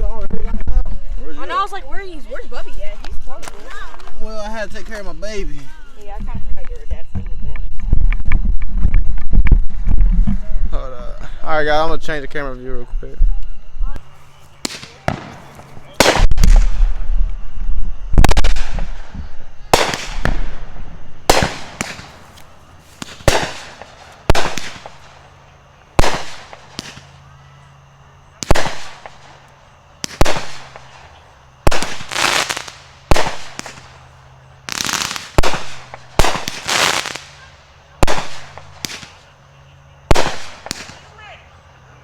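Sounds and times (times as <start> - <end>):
fireworks crackle: 0.0 - 10.8, 13.9 - 27.3, 28.4 - 39.3, 40.0 - 41.4
aerial fireworks bangs: 14.6 - 22.4, 23.0 - 25.3, 26.0 - 27.1, 28.4 - 29.4, 30.0 - 34.0, 34.7 - 37.3, 38.0 - 39.2, 40.1 - 41.0.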